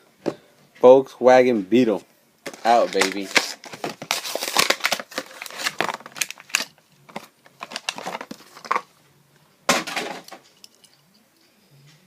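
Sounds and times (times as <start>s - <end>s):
plastic packaging crinkling: 2.4s - 8.9s.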